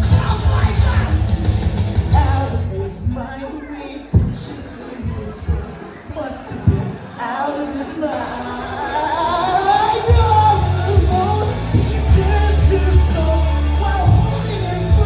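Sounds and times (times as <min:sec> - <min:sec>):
rock backing track: 0:00.0 - 0:03.3, 0:10.0 - 0:15.0
person singing: 0:02.1 - 0:15.0.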